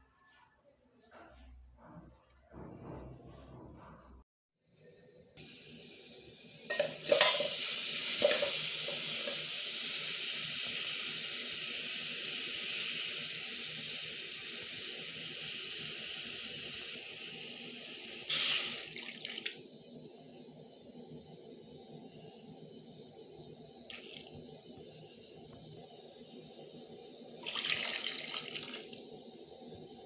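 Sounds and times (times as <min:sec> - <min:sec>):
water running: 0:06.2 - 0:19.6, 0:23.9 - 0:24.5, 0:27.3 - 0:29.2.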